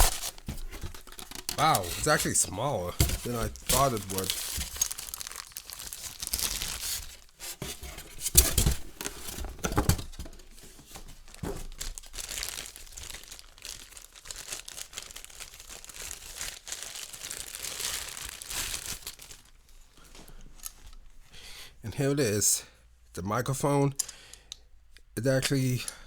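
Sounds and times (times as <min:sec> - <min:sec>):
packaging crinkling and tearing: 0:00.0 - 0:10.1, 0:11.0 - 0:19.7.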